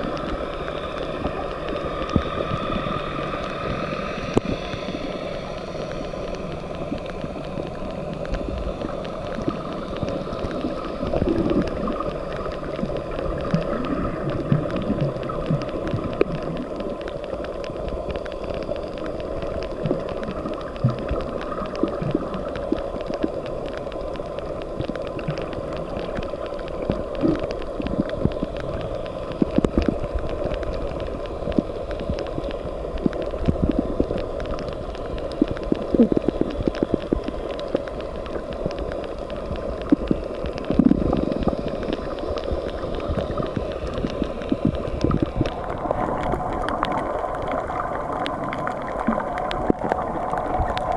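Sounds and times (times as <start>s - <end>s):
steady underwater hum: 0.0s - 50.9s
water gurgling and sloshing: 0.0s - 50.9s.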